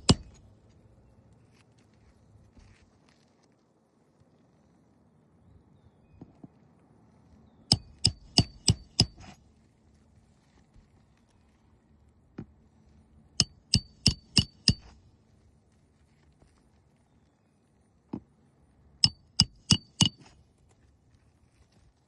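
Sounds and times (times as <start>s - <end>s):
hammer driving nails: 0.0s - 0.4s, 7.7s - 9.4s, 13.4s - 14.9s, 19.0s - 20.3s.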